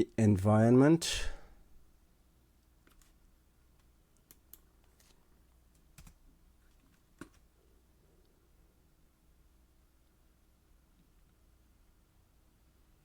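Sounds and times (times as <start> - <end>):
faint keyboard keystrokes: 3.8 - 7.5.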